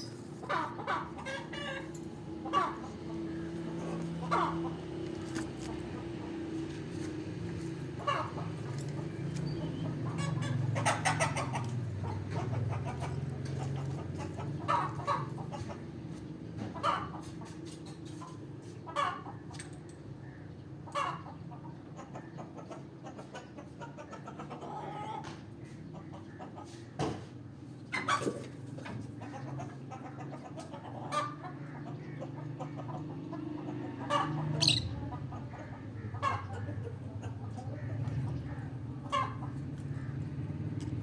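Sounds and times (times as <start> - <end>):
lovebird chirping: 34.6 - 35.0.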